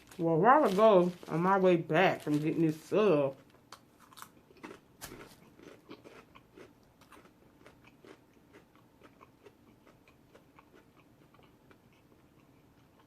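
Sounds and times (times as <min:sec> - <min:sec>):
chewing with mouth clicks: 0:04.1 - 0:13.0.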